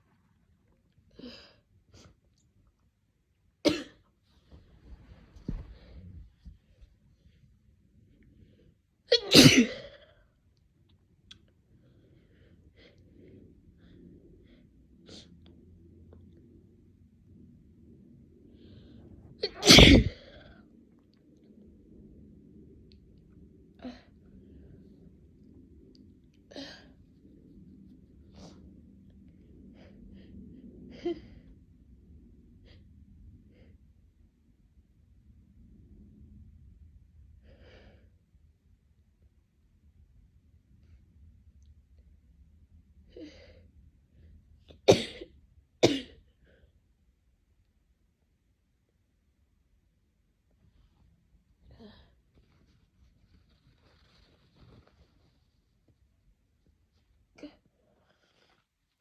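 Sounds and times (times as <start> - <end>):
faint soft sounds: 0.0 - 9.1, 20.2 - 59.0
person sneezing: 9.2 - 9.9, 19.4 - 20.3.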